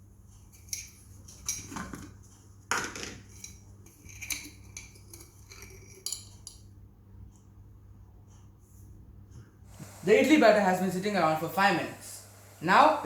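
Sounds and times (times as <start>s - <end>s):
spoon clinking and scraping bowl: 3.2s - 6.6s.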